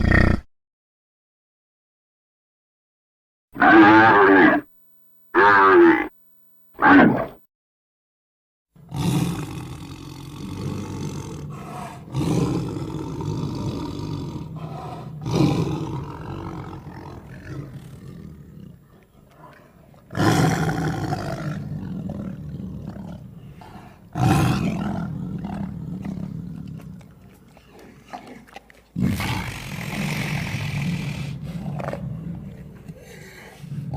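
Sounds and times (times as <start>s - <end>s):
monster roars: 3.6s - 4.6s
rumbling growl: 8.8s - 33.9s.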